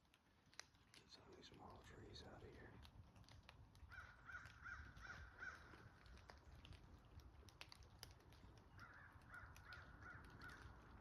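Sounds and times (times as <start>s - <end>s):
crow cawing faintly: 3.9s - 6.0s, 8.8s - 10.8s.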